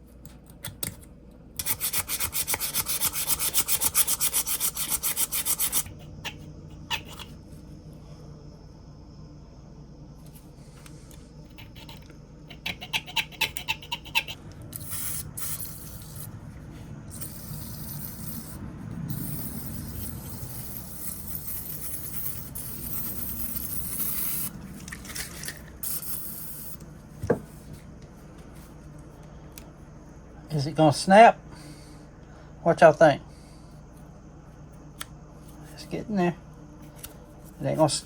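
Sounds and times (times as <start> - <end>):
scraping on a pocket knife: 11.5 - 16.4.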